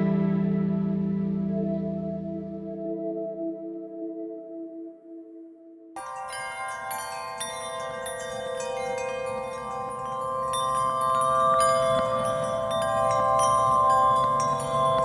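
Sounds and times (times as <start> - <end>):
ambient background music: 0.0 - 15.0
ringing chime-like tones: 6.0 - 15.0.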